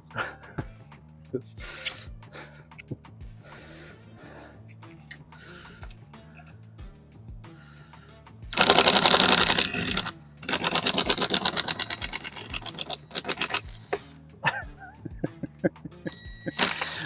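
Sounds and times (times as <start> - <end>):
power tool rattling: 8.5 - 14.0, 16.6 - 17.0.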